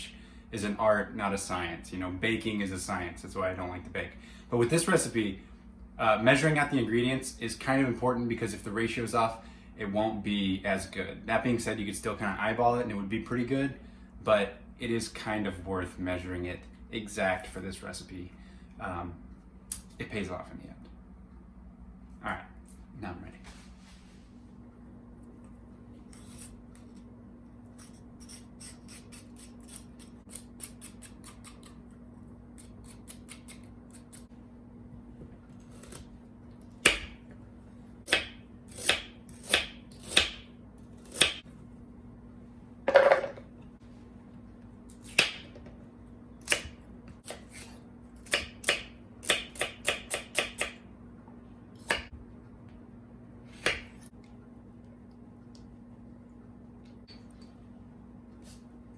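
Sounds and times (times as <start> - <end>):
knife chopping on cutting board: 38.1 - 40.4, 45.0 - 45.5, 46.5 - 50.8, 51.8 - 52.2, 53.5 - 54.0.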